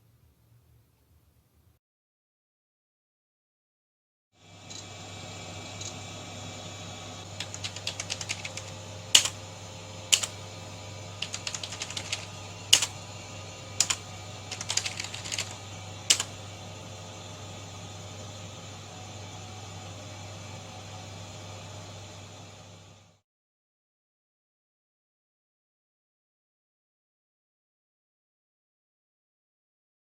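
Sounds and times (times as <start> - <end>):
steady low hum: 4.5 - 23.2
typing on computer keyboard: 7.4 - 9.4, 10.1 - 10.4, 11.2 - 13.0, 13.8 - 16.4.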